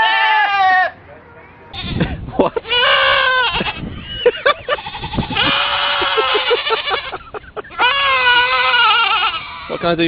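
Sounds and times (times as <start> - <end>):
sheep bleating: 1.7 - 3.9, 4.7 - 7.2, 7.8 - 9.8.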